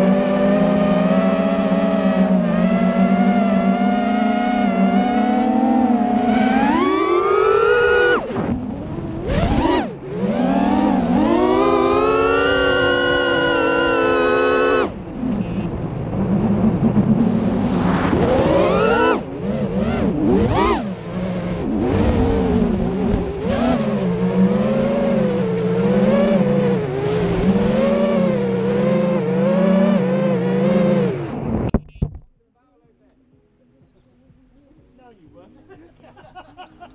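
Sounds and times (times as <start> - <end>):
quadcopter motors whining: 4.5 - 15.8, 17.0 - 23.4.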